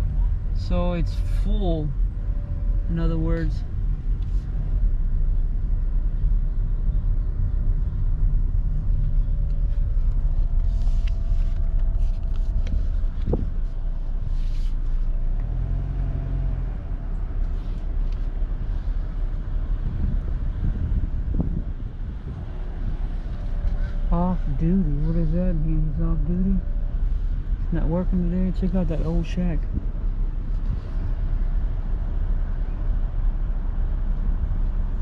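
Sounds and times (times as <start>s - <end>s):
car engine and tyres rumbling: 0.0s - 35.0s.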